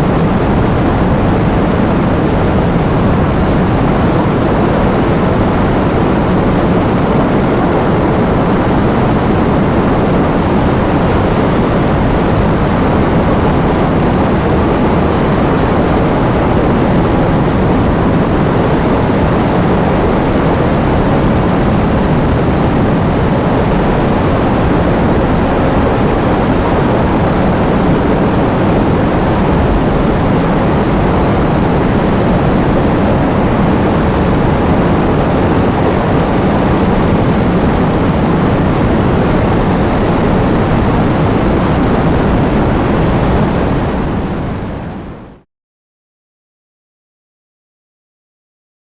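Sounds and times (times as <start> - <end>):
strong wind: 0.0 - 45.4.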